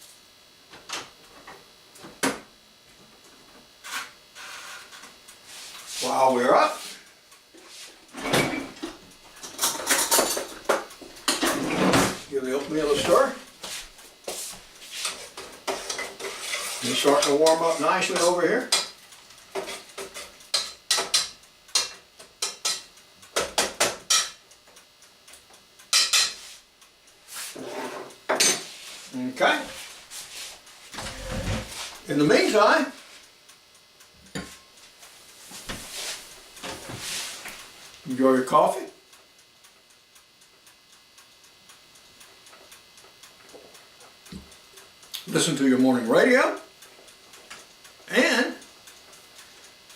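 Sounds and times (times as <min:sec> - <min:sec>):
utensils clinking on pots and dishes: 0:09.4 - 0:12.1, 0:19.6 - 0:24.4, 0:25.9 - 0:26.4
faint mechanical ticking: 0:12.3 - 0:27.3, 0:33.0 - 0:35.5, 0:36.2 - 0:49.9.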